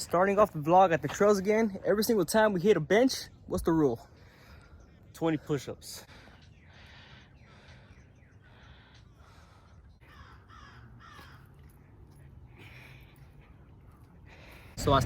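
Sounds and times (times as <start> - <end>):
crows cawing: 9.2 - 13.2.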